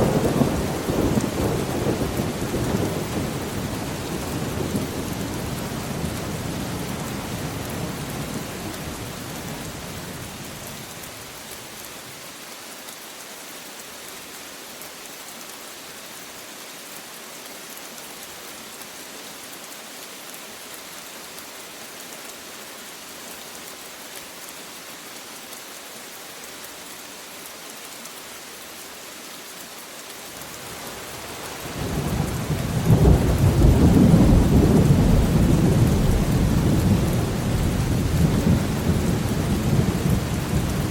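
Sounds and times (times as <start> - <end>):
steady rain falling: 0.0 - 40.9
thunder rumbling: 31.7 - 40.9.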